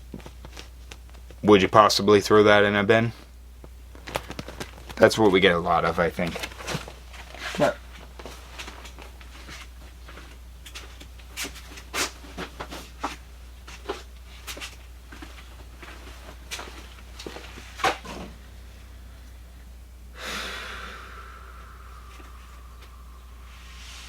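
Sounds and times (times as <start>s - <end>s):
low hum: 14.9s - 24.0s.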